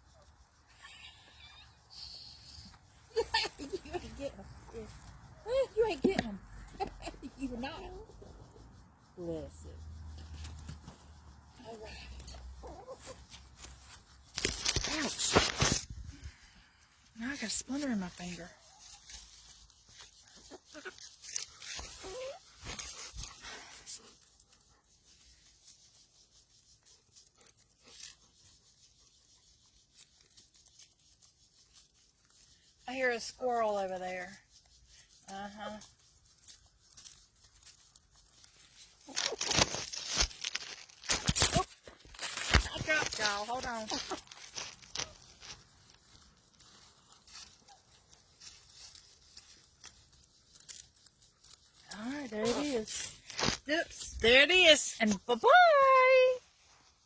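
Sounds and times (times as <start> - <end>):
sharp crackles: 10.0 - 56.7
faint rustling and handling noise: 10.0 - 57.0.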